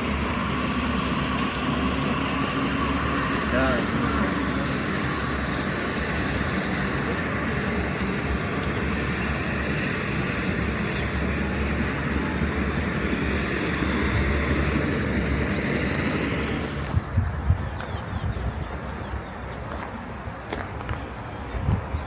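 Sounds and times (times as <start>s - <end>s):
rushing water roar: 0.0s - 16.9s.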